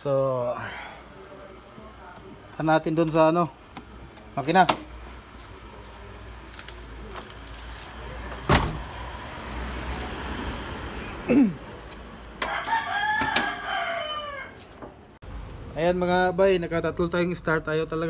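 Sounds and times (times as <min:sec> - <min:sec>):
rooster crowing: 0:12.4 - 0:14.8.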